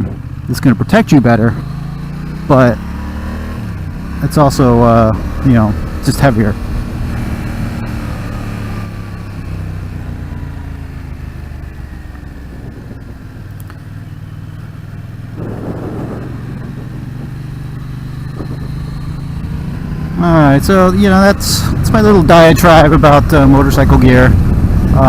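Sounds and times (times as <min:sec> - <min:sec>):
motorcycle engine running: 0:00.0 - 0:25.0
rush of noise: 0:15.3 - 0:25.0.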